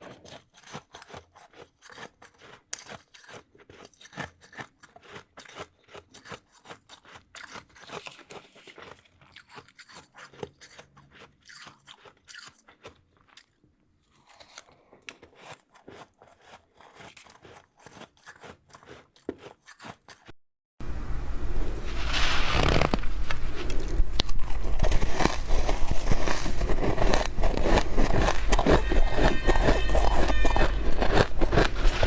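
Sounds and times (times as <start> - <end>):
crunching frost: 21.2 - 32.0.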